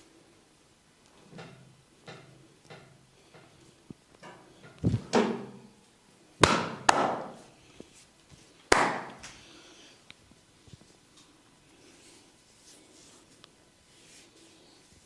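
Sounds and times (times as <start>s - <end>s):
hands smacking head and neck: 6.4s - 7.4s, 8.7s - 9.4s.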